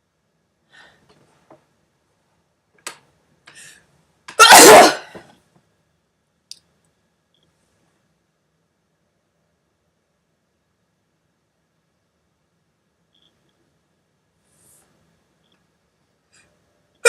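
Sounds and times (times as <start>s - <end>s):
woman sneezing: 4.4s - 5.2s.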